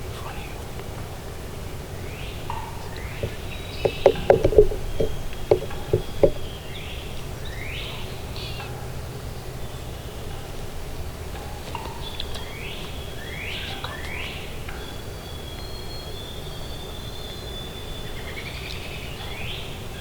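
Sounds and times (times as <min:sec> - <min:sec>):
songbirds whistling: 0:09.6 - 0:20.0.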